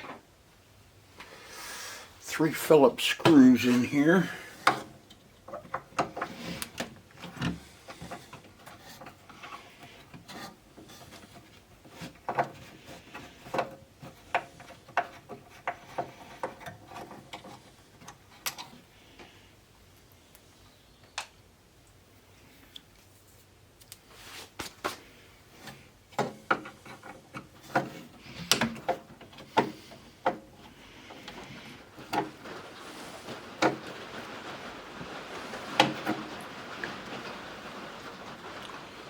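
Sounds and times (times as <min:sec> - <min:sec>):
rain hiss: 0:00.9 - 0:05.1, 0:29.4 - 0:39.0.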